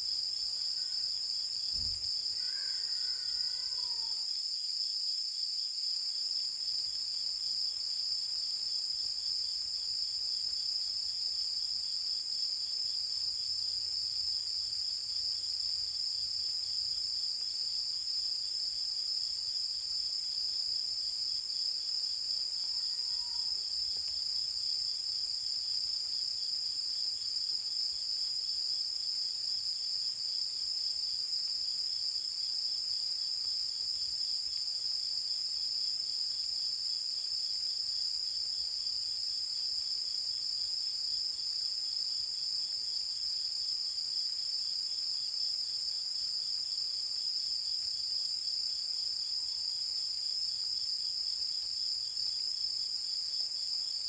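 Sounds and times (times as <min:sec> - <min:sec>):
insects trilling: 0:00.5 - 0:04.4, 0:21.5 - 0:24.8.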